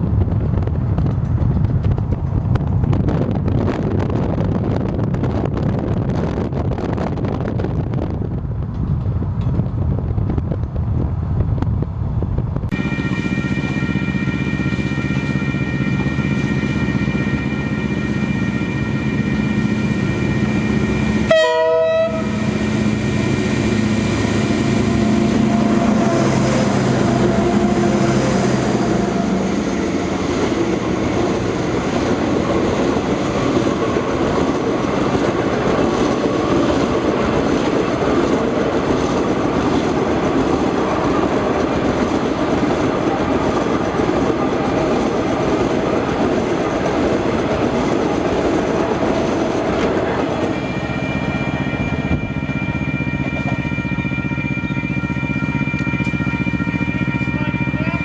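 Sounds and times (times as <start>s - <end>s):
diesel engines rumbling: 0.0s - 53.7s
train wheels on rails: 0.0s - 58.0s
locomotive horn chords: 12.8s - 30.2s, 50.4s - 58.0s.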